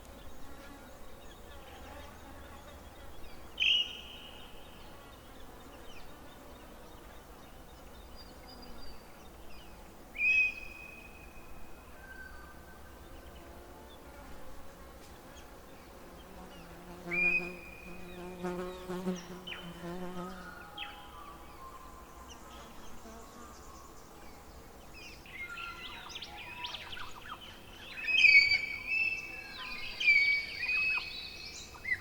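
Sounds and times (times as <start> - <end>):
flying insect buzzing: 13.4 - 20.6.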